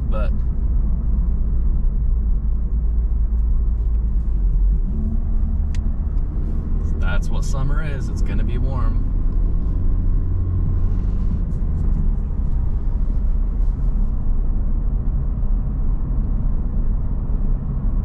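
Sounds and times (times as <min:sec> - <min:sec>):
car engine and road noise rumble: 0:00.0 - 0:18.0.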